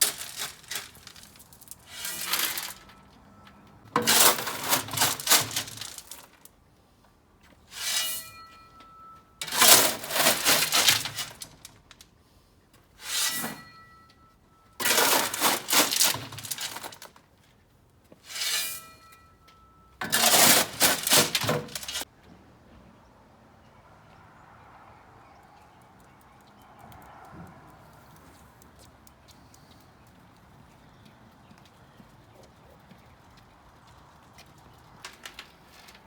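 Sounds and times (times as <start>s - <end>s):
stones crunching and rattling: 0.0s - 2.9s
shovel scraping gravel: 0.0s - 3.0s, 4.0s - 6.4s, 7.7s - 8.7s, 9.4s - 11.7s, 13.0s - 14.0s, 14.8s - 17.1s, 18.2s - 19.2s, 20.0s - 22.1s.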